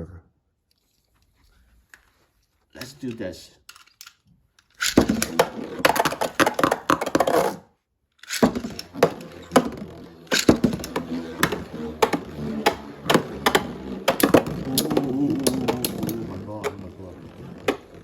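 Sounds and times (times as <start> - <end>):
spinning tops clacking together: 2.8 - 7.6, 8.2 - 18.0
spinning tops whirring: 4.7 - 7.6, 8.2 - 18.0.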